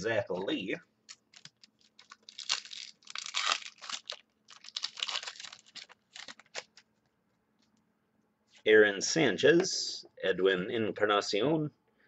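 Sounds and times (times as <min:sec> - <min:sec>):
packaging crinkling and rustling: 0:01.1 - 0:06.9.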